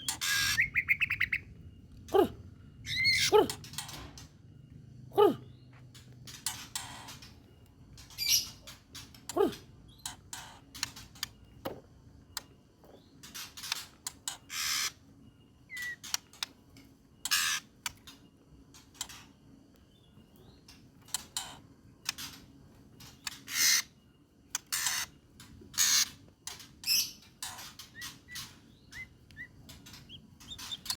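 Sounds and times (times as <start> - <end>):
bird singing staccato bursts: 0.0 - 3.8
small bird chirps: 0.0 - 4.0, 4.6 - 31.0.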